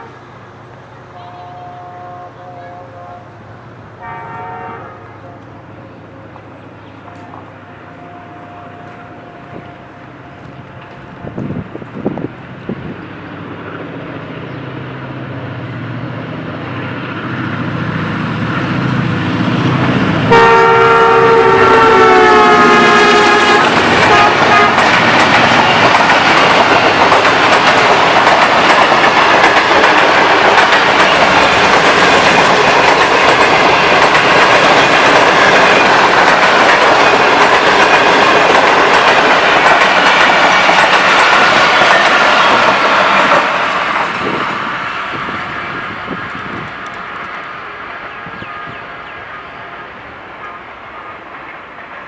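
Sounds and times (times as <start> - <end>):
locomotive rumble: 0.0 - 51.7
train horn chord: 1.2 - 3.4, 4.0 - 5.5, 7.1 - 10.5, 20.3 - 24.9
train wheels clattering on rails: 18.4 - 48.8.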